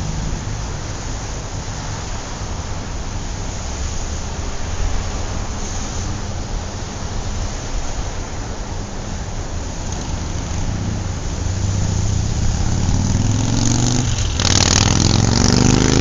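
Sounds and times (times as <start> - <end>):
vehicle engine accelerating: 0.0 - 4.2, 9.6 - 16.0
traffic rumble: 0.0 - 16.0
tyre and road noise rush: 0.0 - 16.0.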